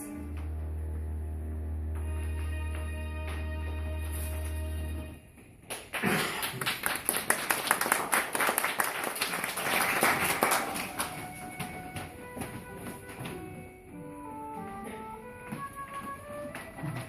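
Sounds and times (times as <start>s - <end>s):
audience applauding: 5.7s - 12.2s.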